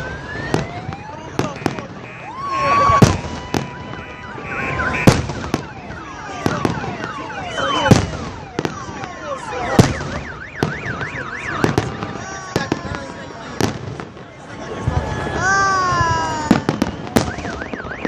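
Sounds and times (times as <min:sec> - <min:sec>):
car alarm warbling: 0:00.0 - 0:12.2, 0:16.7 - 0:18.0
firework bangs: 0:00.0 - 0:18.0
firework whistles falling in pitch: 0:01.5 - 0:08.8, 0:16.3 - 0:18.0.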